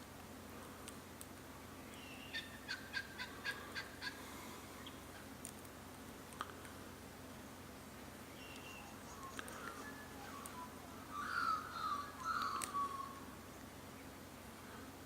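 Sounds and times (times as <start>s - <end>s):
faint ticks: 0.2s - 1.4s, 4.8s - 6.8s, 8.5s - 9.8s
bird chirping: 1.9s - 4.1s, 8.3s - 14.2s.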